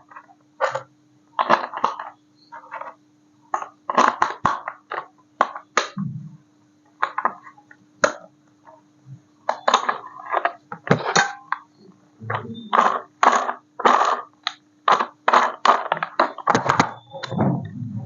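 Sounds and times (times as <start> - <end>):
faint steady hum: 0.0 - 18.0
plastic toy clicking and rattling: 12.7 - 17.0.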